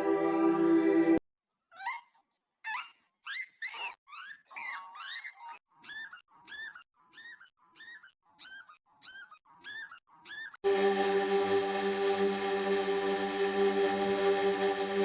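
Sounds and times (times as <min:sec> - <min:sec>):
music: 0:00.0 - 0:01.2, 0:10.7 - 0:15.0.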